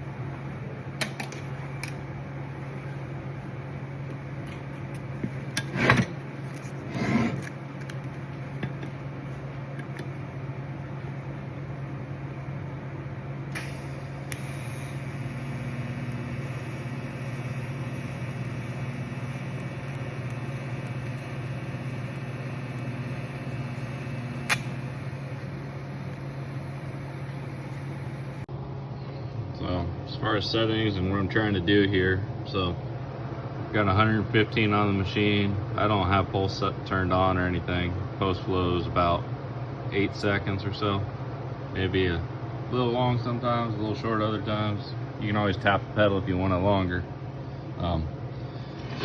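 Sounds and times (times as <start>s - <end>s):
welder humming: 0.0s - 28.5s, 29.1s - 49.0s
welding arc hissing: 13.6s - 28.5s
sharp click: 24.4s - 24.8s.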